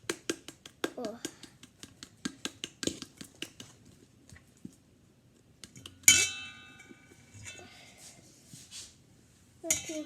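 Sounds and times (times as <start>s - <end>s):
utensil clinking against bowl: 9.6s - 10.0s.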